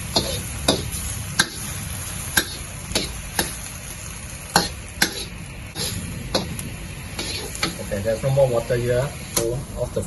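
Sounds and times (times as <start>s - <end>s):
spatula scraping a wok: 0.0s - 3.8s, 4.5s - 7.9s
food sizzling in a wok: 0.0s - 10.0s.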